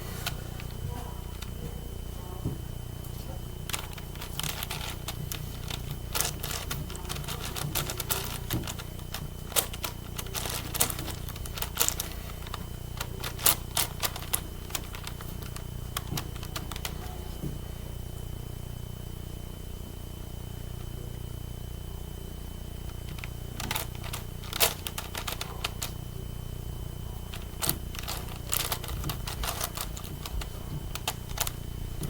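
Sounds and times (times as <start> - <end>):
puzzle cube clicking: 3.7 - 17.0, 23.0 - 26.0, 27.3 - 31.6.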